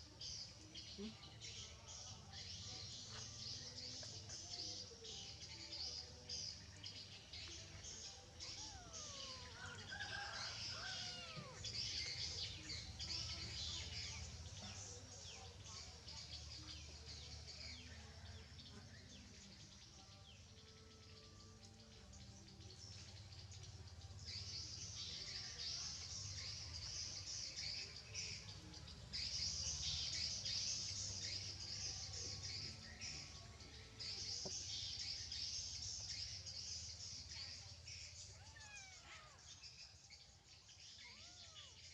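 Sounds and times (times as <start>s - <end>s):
high-pitched bird chirping: 5.3s - 16.4s, 24.2s - 41.9s.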